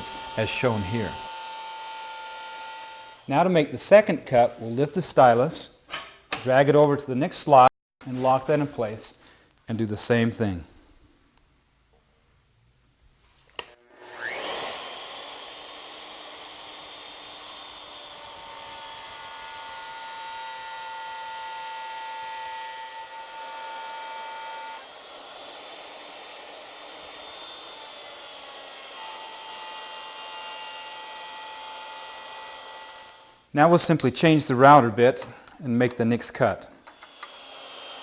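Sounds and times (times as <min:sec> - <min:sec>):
wood router whining: 0:00.0 - 0:03.8, 0:13.6 - 0:33.5, 0:36.8 - 0:38.0.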